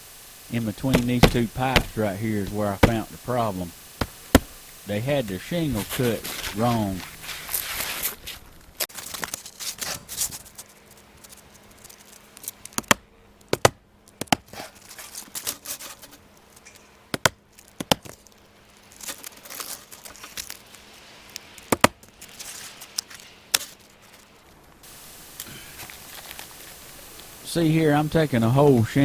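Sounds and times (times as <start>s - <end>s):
knife slicing roofing shingle: 0.8s - 3.1s, 4.0s - 4.6s, 5.7s - 10.4s, 21.6s - 23.8s
sharp knocks: 0.9s - 3.1s, 4.0s - 4.6s.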